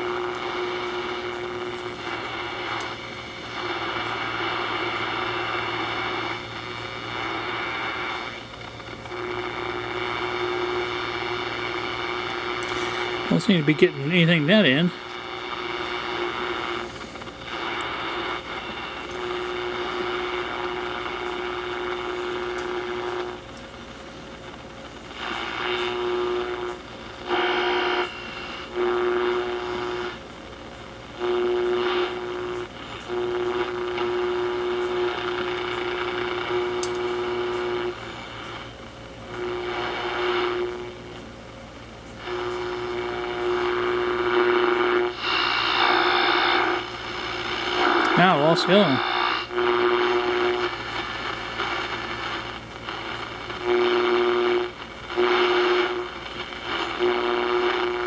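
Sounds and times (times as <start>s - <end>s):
radio static hiss: 0.0s - 58.0s
radio whistling tone: 42.2s - 58.0s.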